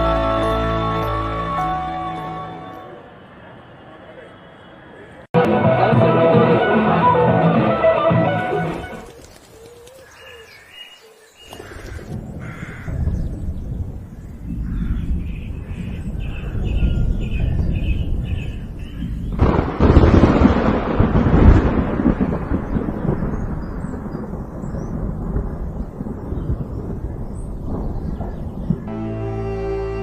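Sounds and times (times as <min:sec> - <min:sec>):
crows cawing: 0:09.8 - 0:13.2, 0:14.6 - 0:15.2.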